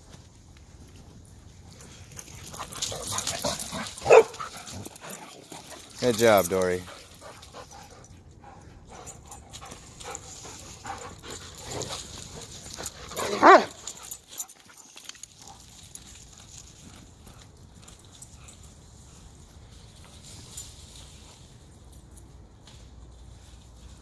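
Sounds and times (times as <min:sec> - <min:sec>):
dogs vocalizing in play: 0:09.0 - 0:14.2
dog loud short cry: 0:13.2 - 0:13.8.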